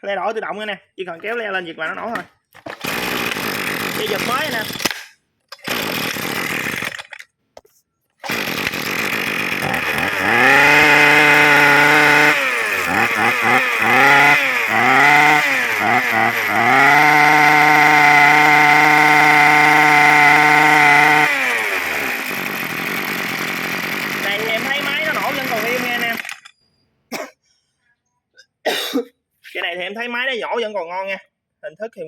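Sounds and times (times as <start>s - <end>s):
brush cutter engine revving: 2.6s - 7.2s, 8.2s - 26.5s.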